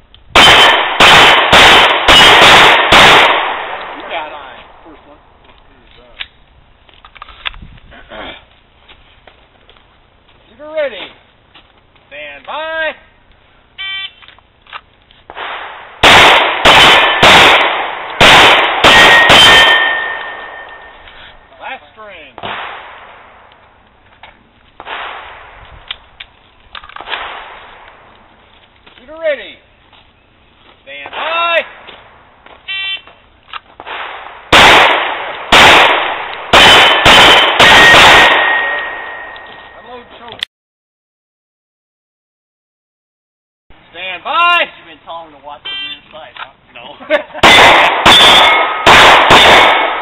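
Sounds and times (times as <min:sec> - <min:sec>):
pistol shots: 0:00.4 - 0:04.8, 0:15.3 - 0:21.0, 0:22.4 - 0:23.5, 0:24.8 - 0:26.0, 0:26.8 - 0:28.1, 0:33.0 - 0:39.8, 0:47.4 - 0:50.0
steel targets ringing: 0:18.9 - 0:21.0, 0:36.8 - 0:40.0, 0:48.1 - 0:48.8.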